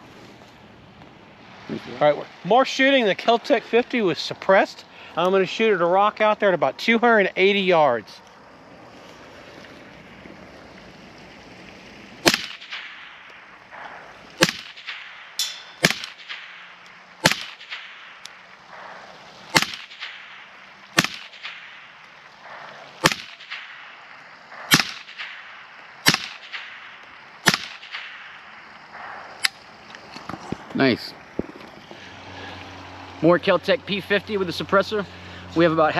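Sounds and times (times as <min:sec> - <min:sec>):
suppressed pistol shots: 0:12.2 - 0:18.4, 0:19.5 - 0:29.6.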